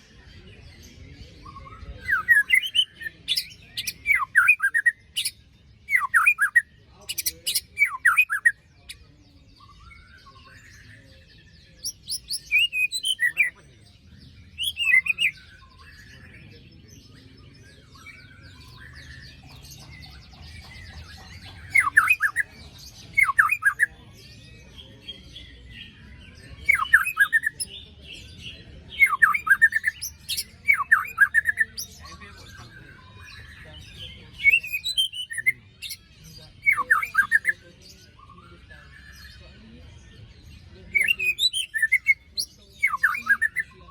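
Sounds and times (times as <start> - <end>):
high bird chattering: 2.0 - 9.0, 18.0 - 23.9, 26.7 - 27.8, 29.0 - 36.0.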